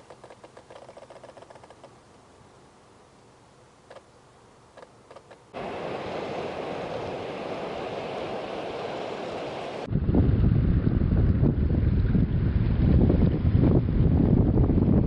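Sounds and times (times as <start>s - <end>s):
faint ticks: 0.0s - 2.0s
coastal rushing noise: 5.5s - 15.0s.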